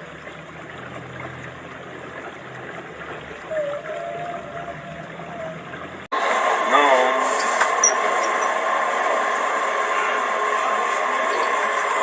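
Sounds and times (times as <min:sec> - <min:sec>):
whale calls: 0:00.0 - 0:06.1.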